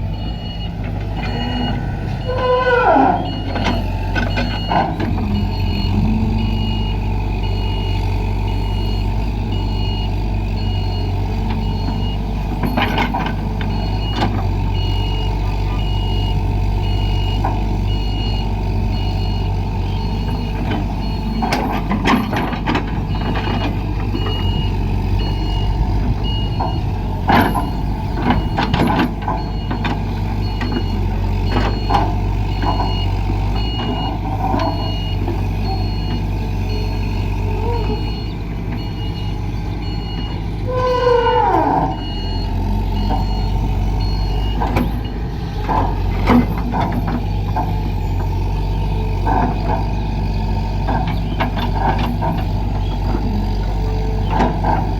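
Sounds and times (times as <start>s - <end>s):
excavator diesel engine running: 0.0s - 54.9s
metallic clanks and knocks: 26.0s - 30.9s.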